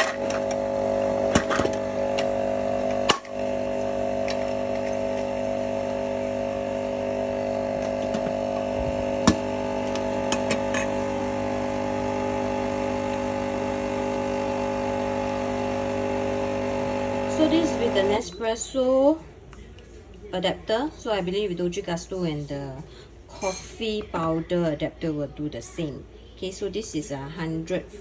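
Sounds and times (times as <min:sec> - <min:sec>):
coffee machine pump running: 0:00.0 - 0:18.3.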